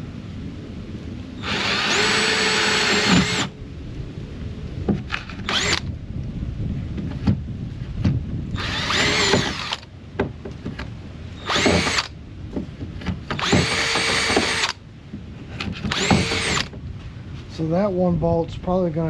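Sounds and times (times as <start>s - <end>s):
cordless drill whining: 1.4s - 3.5s, 5.1s - 5.9s, 8.6s - 9.9s, 11.4s - 12.2s, 13.3s - 14.8s, 15.7s - 16.8s.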